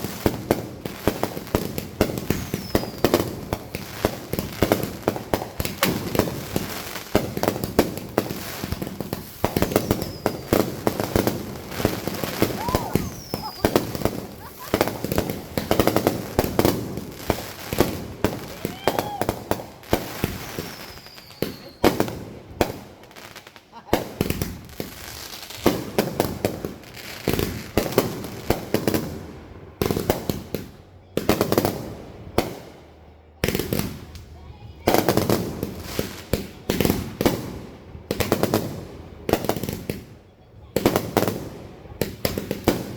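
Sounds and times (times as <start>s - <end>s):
fireworks bangs and pops: 0.0s - 42.9s
falling firework whistle: 2.3s - 3.3s, 9.5s - 16.0s, 17.8s - 21.9s.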